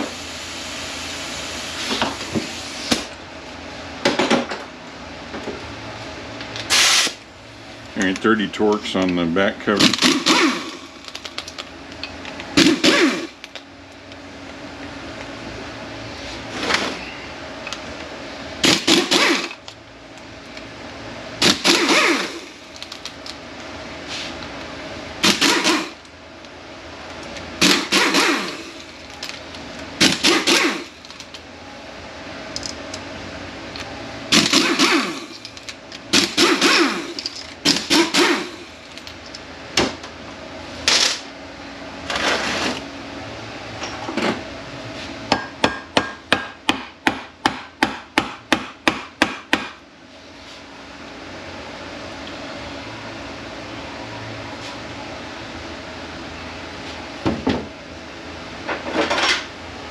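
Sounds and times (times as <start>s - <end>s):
power tool bursts: 6.7s - 7.2s, 9.8s - 10.9s, 12.6s - 13.4s, 18.6s - 19.6s, 21.4s - 22.6s, 25.2s - 26.0s, 27.6s - 28.8s, 30.0s - 31.0s, 34.3s - 35.4s, 36.1s - 38.7s.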